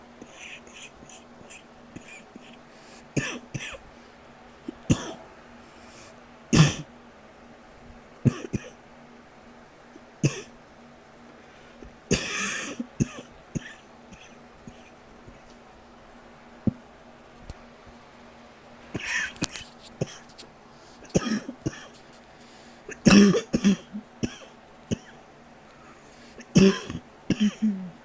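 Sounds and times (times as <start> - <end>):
person coughing quietly: 0.3 - 2.6, 3.2 - 3.8, 4.7 - 5.3, 6.6 - 6.9, 8.3 - 8.8, 10.2 - 10.6, 12.1 - 15.4, 19.0 - 20.3, 21.0 - 22.1, 22.9 - 25.2, 26.4 - 28.0.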